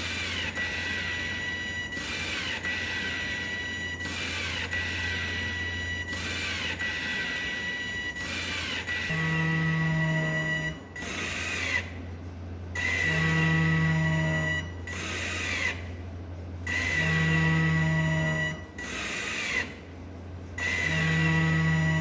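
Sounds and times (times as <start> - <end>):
ventilator blower motor whine: 0.0 - 22.0
steady low hum: 8.8 - 22.0.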